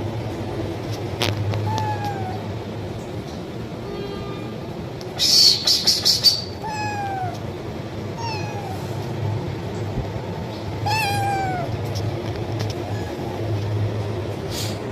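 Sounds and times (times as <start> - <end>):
kitten meowing: 1.6 - 2.4, 6.5 - 7.5, 8.2 - 9.0, 10.8 - 11.8.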